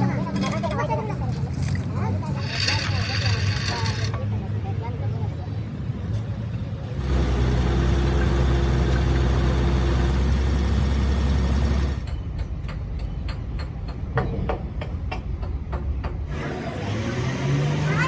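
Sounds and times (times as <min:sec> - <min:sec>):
large engine humming: 0:06.8 - 0:12.2.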